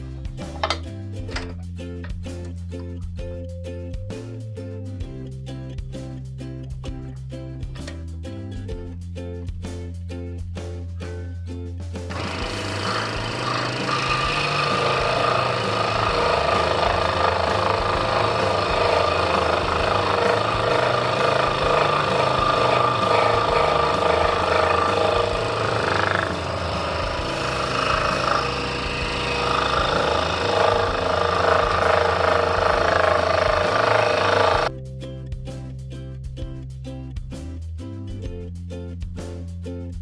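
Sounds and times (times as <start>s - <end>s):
scroll saw buzzing: 12.1s - 34.7s.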